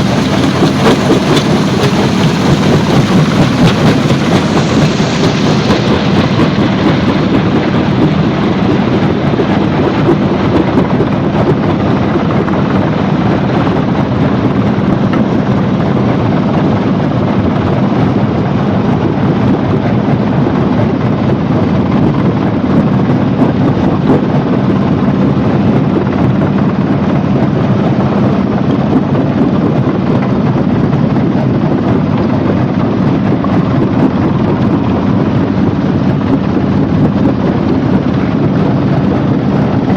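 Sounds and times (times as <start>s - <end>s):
heavy machinery rumbling: 0.0s - 15.2s.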